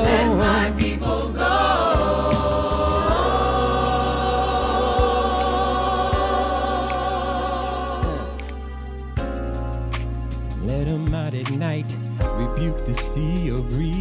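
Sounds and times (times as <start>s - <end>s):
choir holding a chord: 0.0s - 9.1s.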